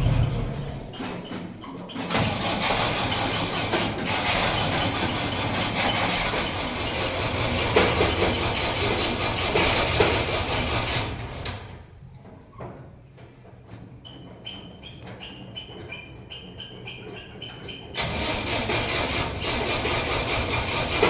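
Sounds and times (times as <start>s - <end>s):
starter cranking engine: 18.0s - 21.0s.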